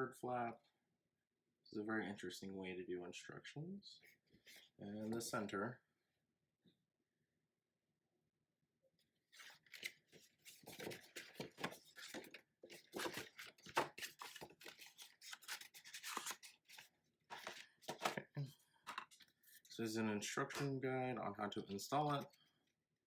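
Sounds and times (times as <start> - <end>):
paper and cardboard rustling: 9.3 - 19.7.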